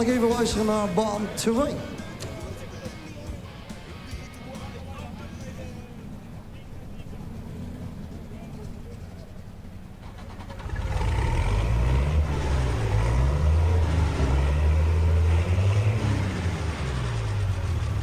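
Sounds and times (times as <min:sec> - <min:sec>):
tractor engine running hard: 0:00.0 - 0:18.0.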